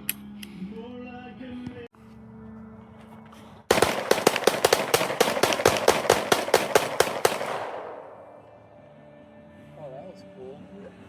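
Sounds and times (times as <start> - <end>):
rapid gunfire: 3.7 - 8.5.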